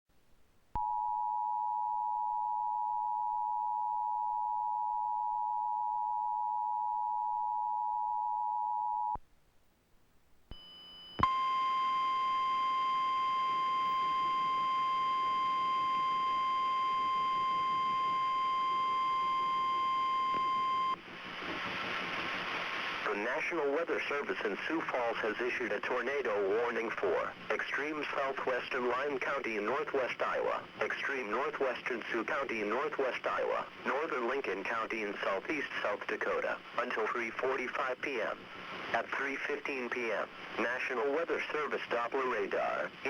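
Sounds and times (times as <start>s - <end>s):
steady warning tone: 10.5s - 21.0s.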